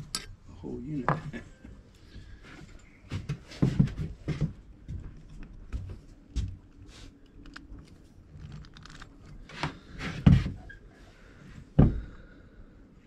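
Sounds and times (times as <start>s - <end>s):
small clicks and scrapes: 6.8s - 9.8s.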